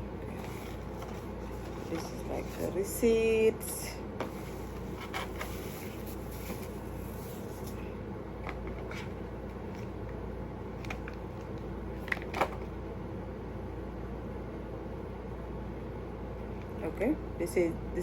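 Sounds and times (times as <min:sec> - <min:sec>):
steady background hum: 0:00.0 - 0:18.0
paper rustling: 0:00.3 - 0:02.8, 0:04.2 - 0:07.9.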